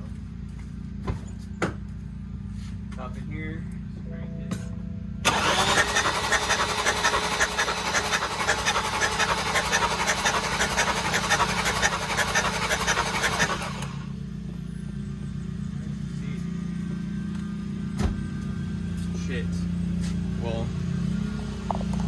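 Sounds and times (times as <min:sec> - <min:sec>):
engine cranking on starter: 0:05.2 - 0:14.1.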